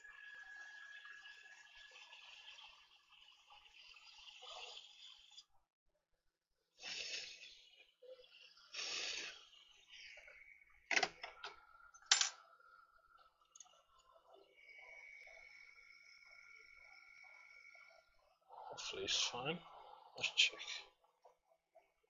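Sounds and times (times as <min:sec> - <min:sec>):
short hissing bursts: 0:06.8 - 0:07.5, 0:08.7 - 0:09.5
faint steady whine: 0:06.8 - 0:22.0.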